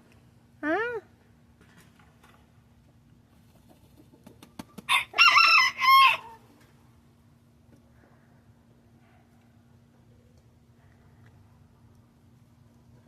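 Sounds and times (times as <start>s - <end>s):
chicken crowing: 4.9s - 6.4s.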